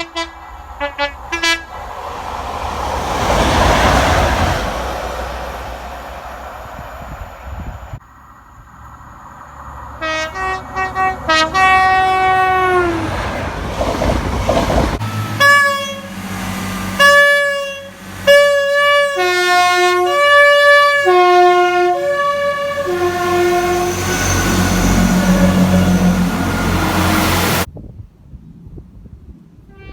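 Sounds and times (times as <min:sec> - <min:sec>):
train horn blasts: 0:00.0 - 0:01.8, 0:10.0 - 0:13.4, 0:15.0 - 0:27.7, 0:29.7 - 0:29.9
passing train rushing: 0:00.0 - 0:27.7.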